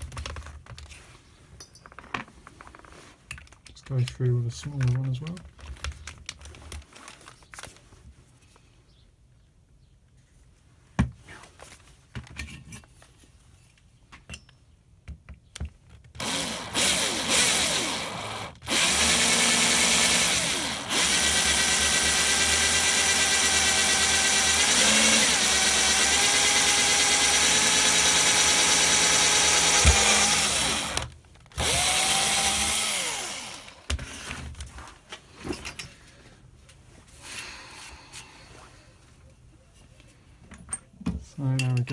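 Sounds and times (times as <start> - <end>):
power drill whining through metal: 16.2 - 34.4.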